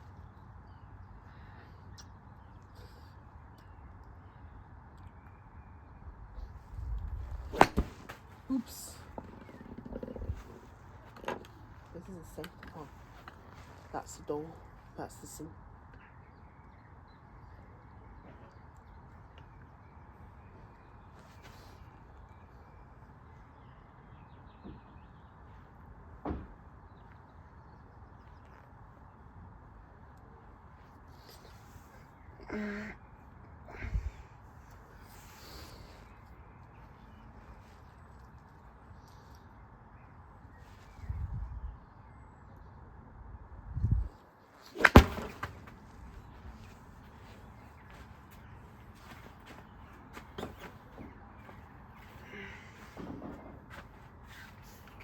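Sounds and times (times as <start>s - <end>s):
low background noise: 0.0s - 55.0s.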